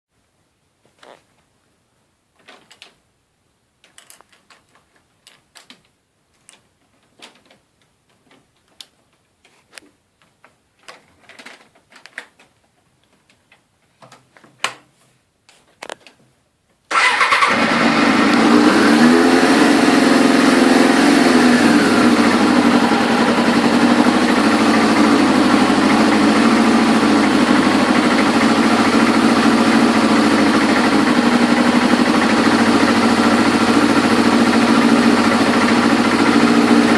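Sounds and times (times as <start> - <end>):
faint clicks and knocks: 3.8 - 16.8
motorcycle engine starting and running: 16.9 - 36.9.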